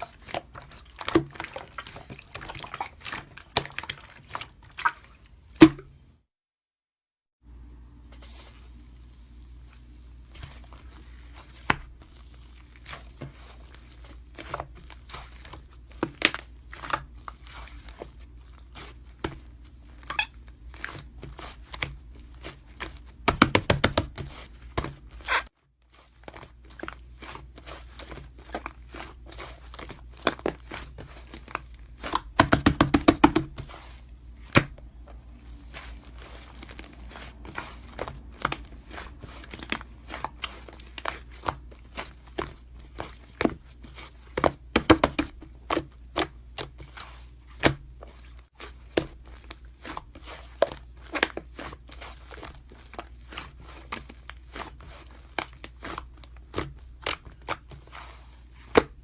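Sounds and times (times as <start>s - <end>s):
hands playing with slime: 26.0s - 59.0s
rapid popping of slime: 32.1s - 33.7s.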